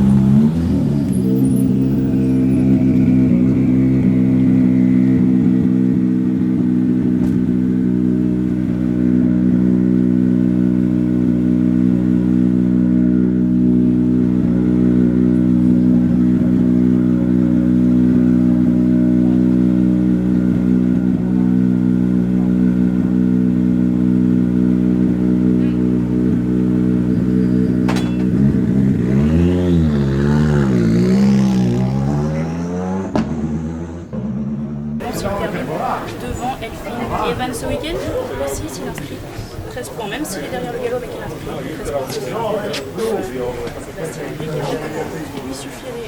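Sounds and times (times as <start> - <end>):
engine running steadily: 0.0 - 31.9.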